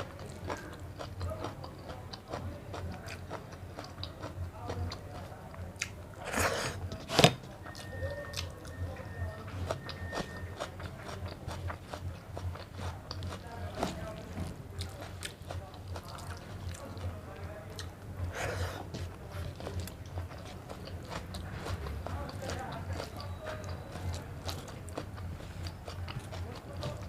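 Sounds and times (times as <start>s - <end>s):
person chewing food: 0.0s - 27.0s.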